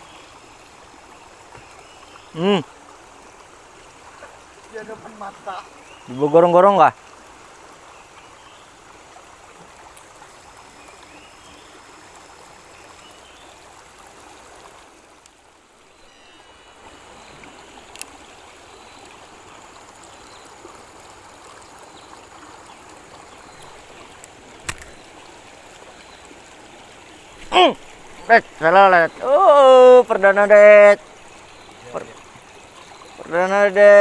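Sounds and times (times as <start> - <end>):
fast-flowing river water: 0.0 - 34.0
sharp clicks: 23.6 - 25.1.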